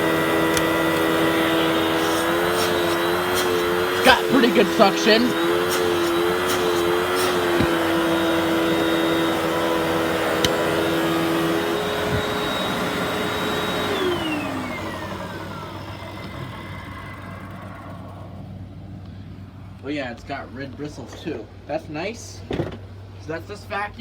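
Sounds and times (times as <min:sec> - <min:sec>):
vacuum cleaner whining: 0:00.0 - 0:19.3.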